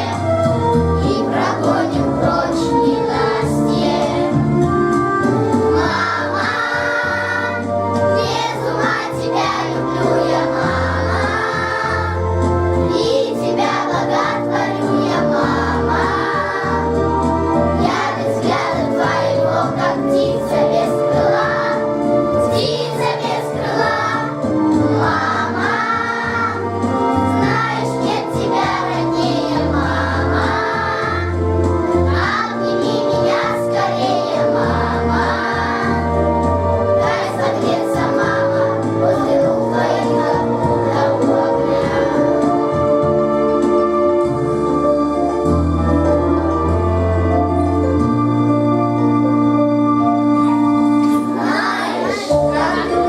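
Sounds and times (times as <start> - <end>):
children singing: 0.0 - 0.2, 1.0 - 4.5, 5.7 - 17.0, 17.8 - 42.8, 51.1 - 53.0
instrumental backing track: 0.0 - 53.0.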